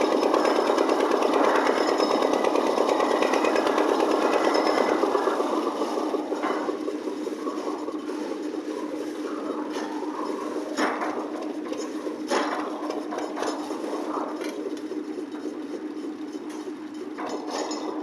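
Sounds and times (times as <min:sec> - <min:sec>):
concrete mixer humming: 0:00.0 - 0:18.0.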